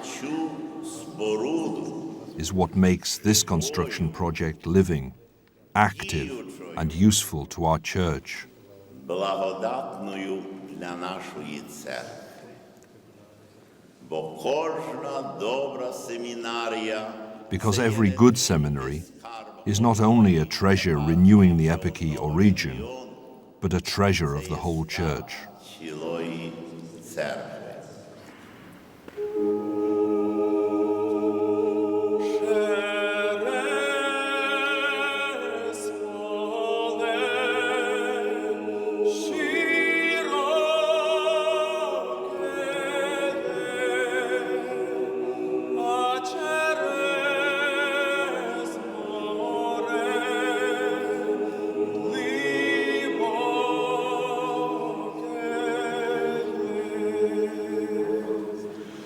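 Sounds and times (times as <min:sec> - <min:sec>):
choir sustaining chords: 0:29.1 - 0:59.0.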